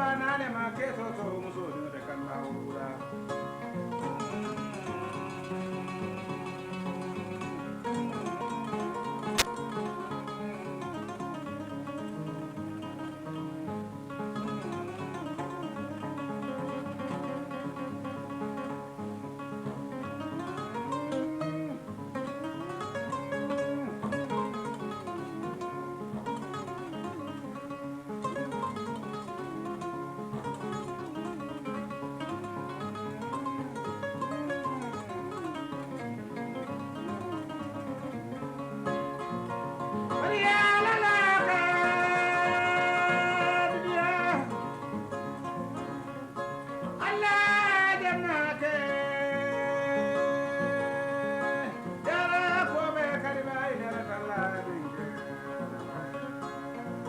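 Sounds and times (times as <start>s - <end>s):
man singing: 0.0s - 13.2s, 40.1s - 45.0s, 46.9s - 57.0s
kora plucked notes: 0.0s - 57.0s.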